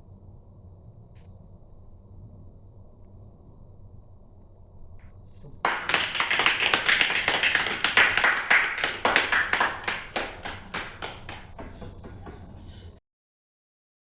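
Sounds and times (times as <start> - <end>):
small audience applauding: 5.6 - 12.4.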